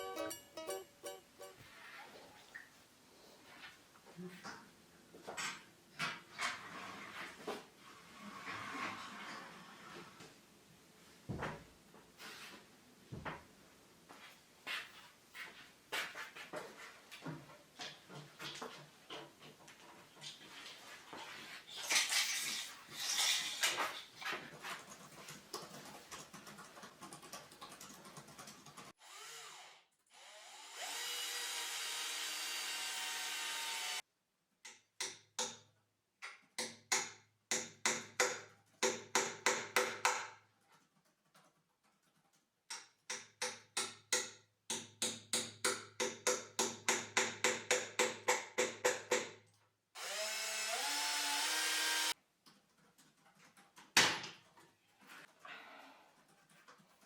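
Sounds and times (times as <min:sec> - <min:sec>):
rhythmic strokes: 0:00.0 - 0:01.6
power tool whining: 0:30.2 - 0:34.0, 0:50.0 - 0:52.1.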